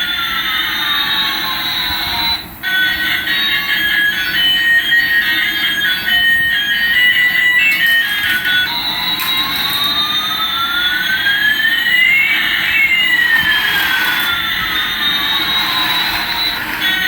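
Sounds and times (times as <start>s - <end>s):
electronic jet engine hissing rush: 10.8s - 17.0s.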